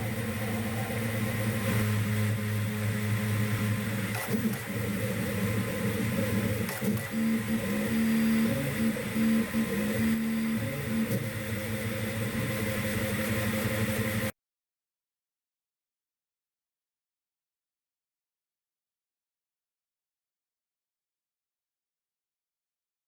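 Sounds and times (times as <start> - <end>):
stepper motors whining: 0.0 - 14.3.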